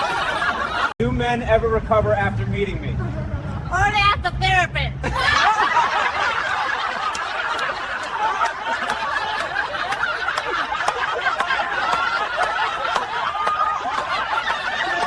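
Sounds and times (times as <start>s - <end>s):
people laughing together: 0.0s - 1.0s, 5.0s - 15.0s.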